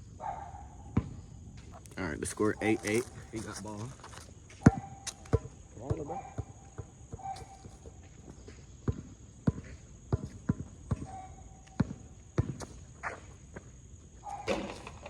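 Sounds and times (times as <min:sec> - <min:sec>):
high buzz of insects: 0:00.0 - 0:15.0
basketball bouncing on hard court: 0:04.5 - 0:07.9, 0:08.8 - 0:13.2.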